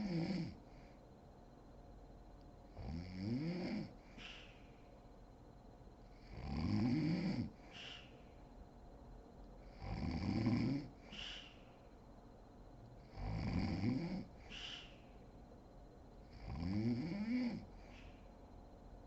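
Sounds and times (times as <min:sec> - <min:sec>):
woman snoring: 0:00.0 - 0:00.6, 0:02.8 - 0:03.9, 0:06.3 - 0:07.5, 0:09.8 - 0:10.9, 0:13.1 - 0:14.3, 0:16.4 - 0:17.7
breathy hiss: 0:03.8 - 0:05.0, 0:07.1 - 0:08.5, 0:10.7 - 0:12.1, 0:13.6 - 0:15.3, 0:17.3 - 0:18.4.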